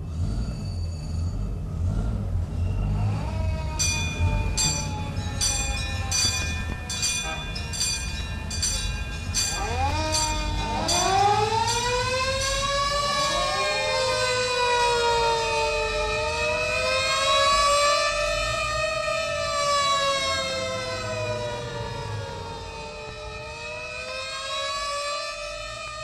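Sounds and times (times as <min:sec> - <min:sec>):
fire engine sirens wailing: 0:00.0 - 0:26.0
warning bell striking: 0:03.7 - 0:16.6.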